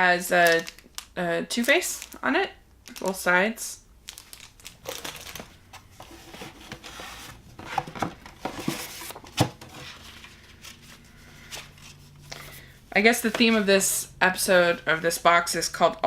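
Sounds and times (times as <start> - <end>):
packaging rustling and crinkling: 0.3 - 2.2, 4.0 - 12.6.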